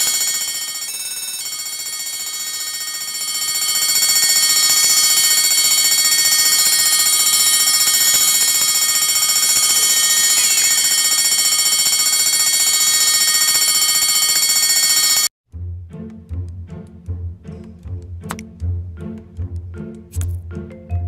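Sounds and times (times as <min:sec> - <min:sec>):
fire alarm bell ringing: 0:00.0 - 0:15.3.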